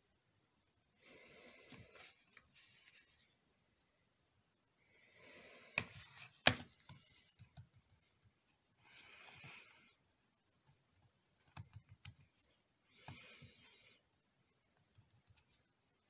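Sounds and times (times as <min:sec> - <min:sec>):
rubbing and rustling handling noise: 0:01.6 - 0:04.2.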